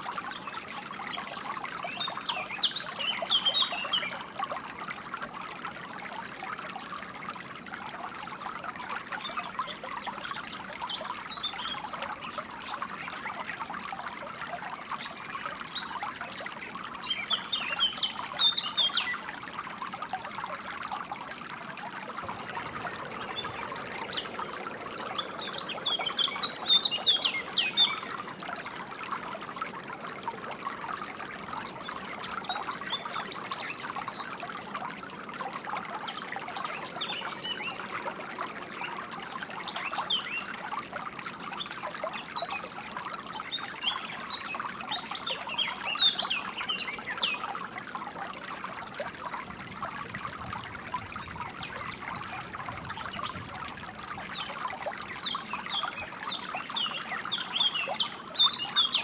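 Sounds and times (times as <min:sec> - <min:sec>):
water trickling over stones: 0:00.0 - 0:59.0
birds chirping: 0:22.2 - 0:28.2.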